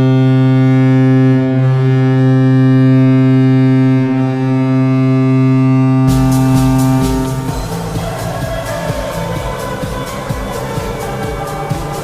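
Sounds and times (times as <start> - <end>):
hockey goal horn: 0.0 - 8.5.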